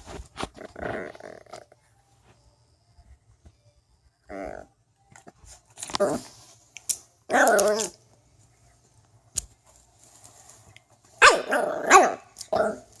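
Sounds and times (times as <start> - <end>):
puppy barking: 11.2 - 12.8.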